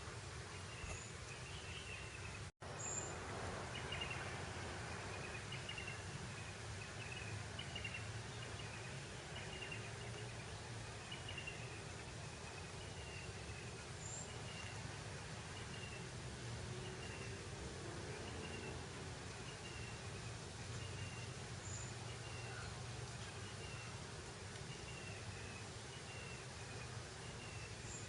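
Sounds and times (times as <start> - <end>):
breeze hissing over grassland: 0.0 - 28.0.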